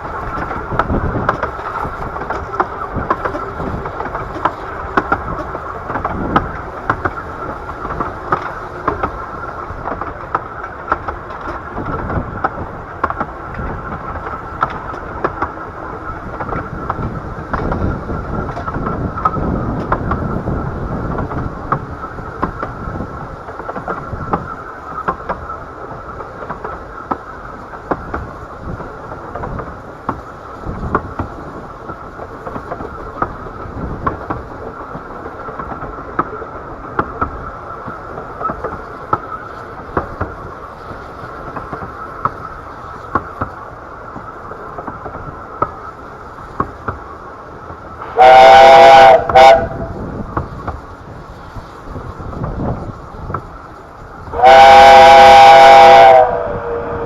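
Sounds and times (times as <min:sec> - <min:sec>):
rail joint clicks: 0:00.0 - 0:57.0
steam train rumbling: 0:00.0 - 0:57.0
steam locomotive chime whistle: 0:48.0 - 0:50.1, 0:54.3 - 0:57.0.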